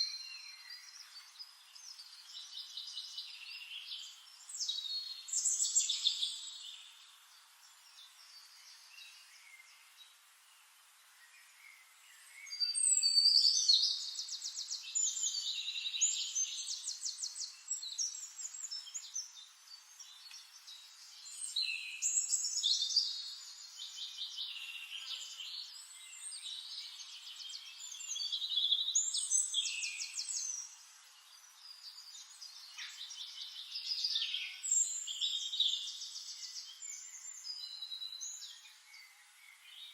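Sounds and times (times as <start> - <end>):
songbirds trilling: 11.4 - 39.9.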